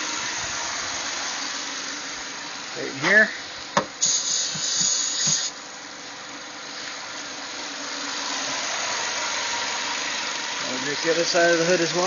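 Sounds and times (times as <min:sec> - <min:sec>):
aerosol can hissing spray: 0:04.0 - 0:05.6.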